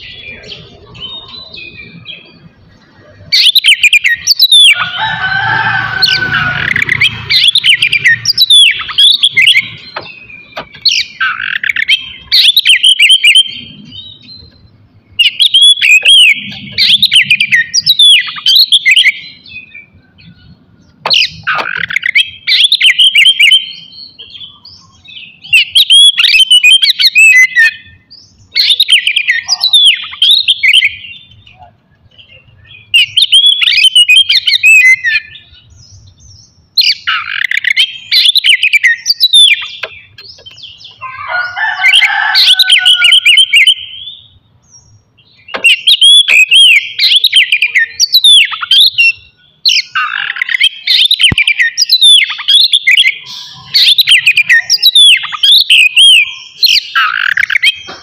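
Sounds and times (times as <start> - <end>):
bird singing whistled phrases: 3.4 - 4.9, 6.6 - 13.8, 15.2 - 19.8, 21.2 - 31.6, 32.3 - 35.5, 36.8 - 40.2, 40.8 - 44.2, 45.4 - 57.8.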